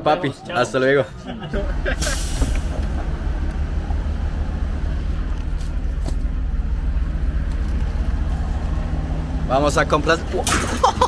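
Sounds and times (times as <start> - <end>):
car engine and road rumble: 0.0 - 11.0.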